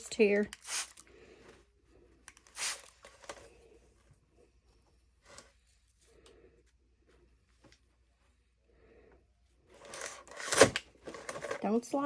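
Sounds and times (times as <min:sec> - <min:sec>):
soft handling clicks and rustles: 0:01.4 - 0:08.5.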